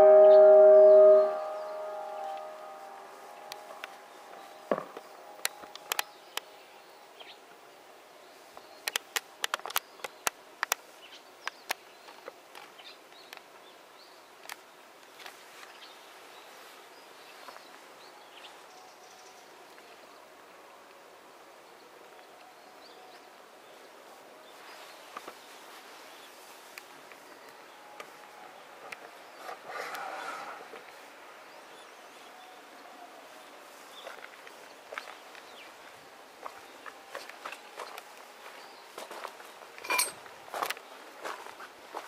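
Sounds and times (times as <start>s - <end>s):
loudspeaker chime: 0.0s - 4.5s
low background hiss: 0.0s - 29.6s, 30.3s - 42.0s.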